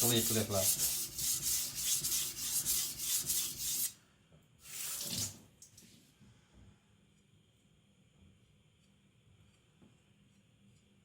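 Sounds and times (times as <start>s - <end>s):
knife scraping on whetstone: 0.0s - 3.9s.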